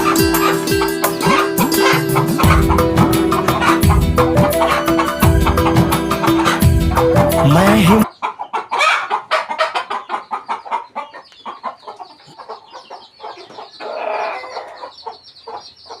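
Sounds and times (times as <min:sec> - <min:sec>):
chickens clucking: 0:00.0 - 0:16.0.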